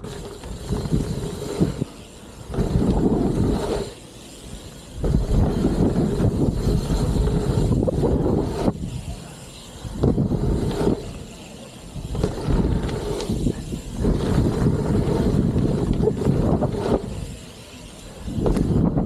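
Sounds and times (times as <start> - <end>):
bike tyres rumbling on dirt: 0.0 - 19.0
wind on microphone: 2.5 - 3.9, 5.0 - 9.1, 9.8 - 11.2, 12.0 - 17.4, 18.2 - 19.0.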